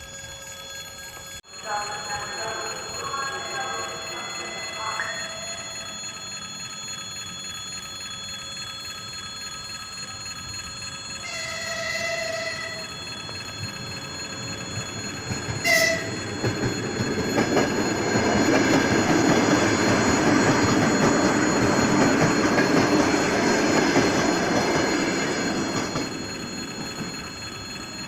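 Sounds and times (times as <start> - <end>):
train wheels rushing on rails: 11.2 - 28.0.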